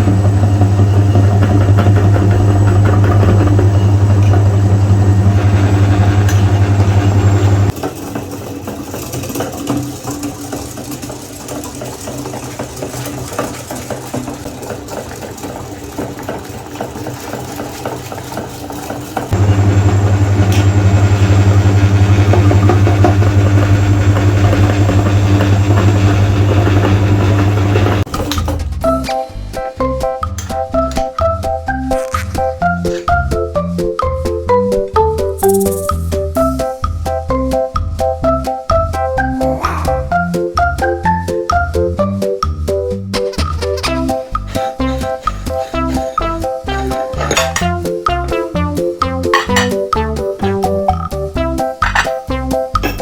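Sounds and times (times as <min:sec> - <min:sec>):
meat grinder motor humming: 0:00.0 - 0:28.3.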